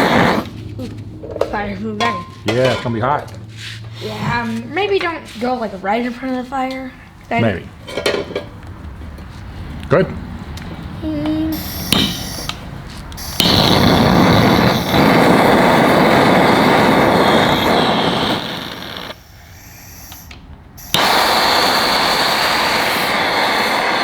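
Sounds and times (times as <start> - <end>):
gas torch hissing: 0.0 - 0.7, 1.5 - 6.1, 10.8 - 24.0.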